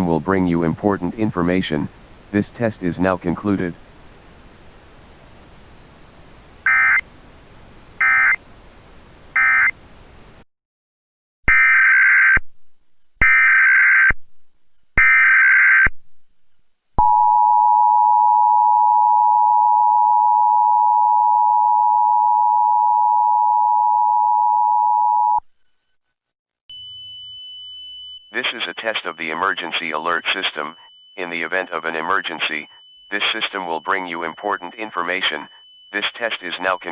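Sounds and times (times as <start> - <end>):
digital data bursts: 28.2 - 36.9.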